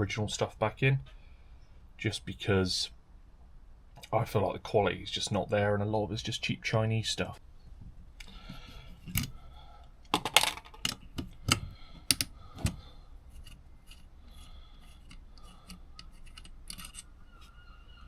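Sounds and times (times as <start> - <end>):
tools clicking on metal parts: 10.4 - 12.3, 14.9 - 17.2.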